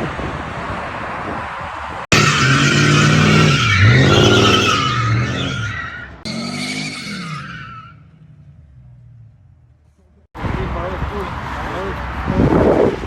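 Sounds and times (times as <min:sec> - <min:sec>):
tyres squealing: 0:02.1 - 0:08.0
car engine revving: 0:02.1 - 0:09.6.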